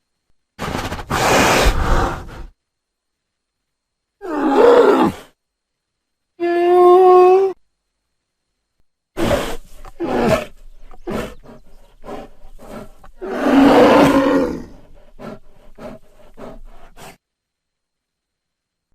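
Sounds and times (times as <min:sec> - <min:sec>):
bear growling and roaring: 0:04.2 - 0:05.3, 0:09.2 - 0:17.2.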